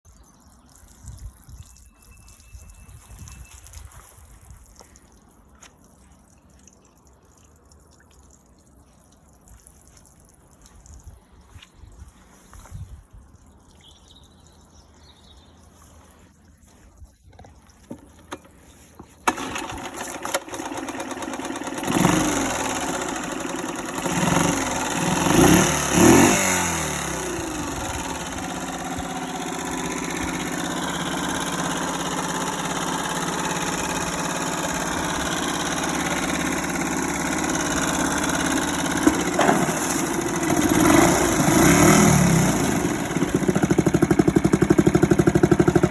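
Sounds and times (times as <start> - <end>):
outboard motor revving: 17.8 - 45.9.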